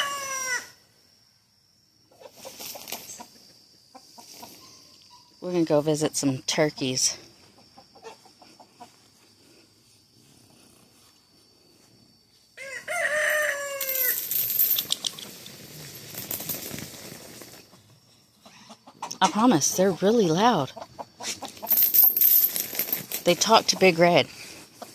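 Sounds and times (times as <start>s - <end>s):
rooster crowing: 0.0s - 0.8s, 12.6s - 14.3s
farmyard fowl sounds: 2.1s - 5.3s, 6.9s - 9.3s, 17.7s - 21.7s.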